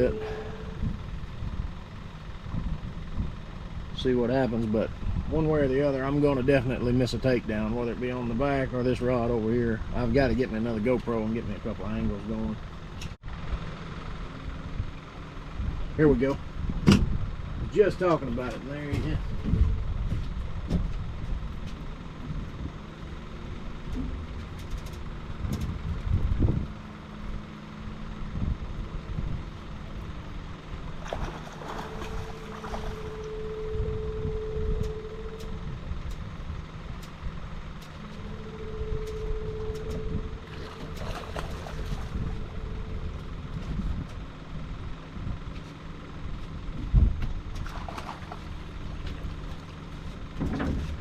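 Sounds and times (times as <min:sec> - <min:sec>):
boat motor humming: 0:00.0 - 0:51.0
mid-pitched whine: 0:00.0 - 0:51.0
wind on microphone: 0:19.0 - 0:21.6, 0:25.4 - 0:26.8.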